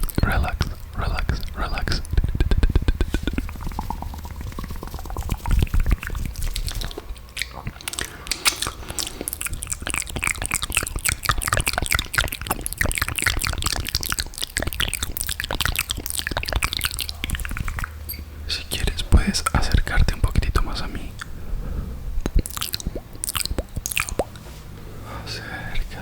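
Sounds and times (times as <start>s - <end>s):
wet mouth clicks and smacks: 1.4s - 18.0s, 22.2s - 24.4s.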